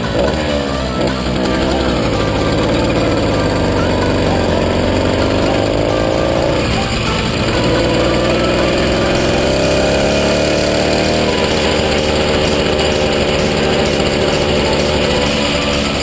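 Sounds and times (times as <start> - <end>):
two-stroke engine revving: 0.0 - 16.0.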